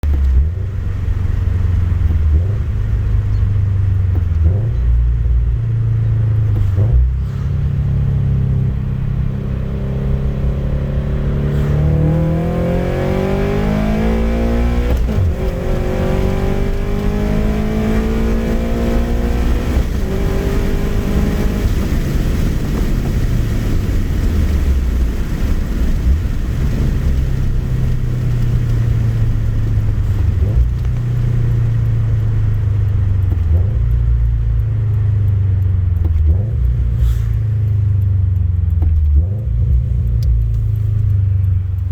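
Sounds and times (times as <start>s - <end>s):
car engine revving hard: 6.4s - 34.0s.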